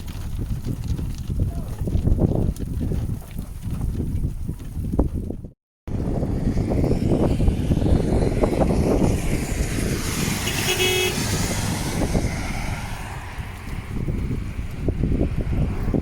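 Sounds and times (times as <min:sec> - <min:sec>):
road vehicle rumble: 0:05.9 - 0:16.0
car horn toot: 0:10.4 - 0:11.3.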